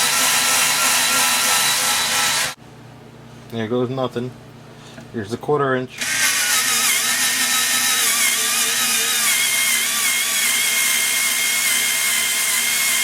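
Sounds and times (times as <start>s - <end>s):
cordless screwdriver whining: 6.0s - 13.0s.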